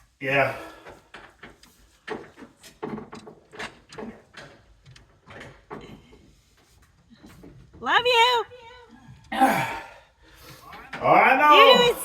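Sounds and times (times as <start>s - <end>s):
wire scraping and knocking in conduit: 0.8s - 8.0s.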